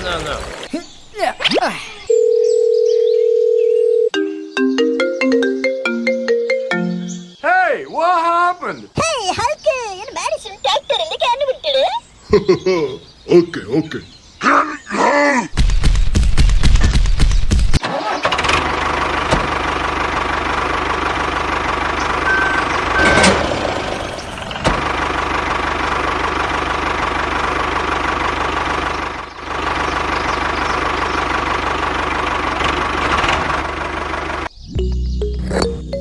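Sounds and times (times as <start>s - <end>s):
vehicle engine running: 18.3s - 36.0s.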